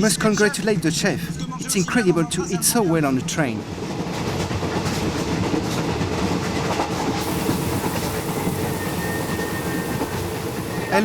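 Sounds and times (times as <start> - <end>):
train wheels rumbling on rails: 2.6 - 11.0.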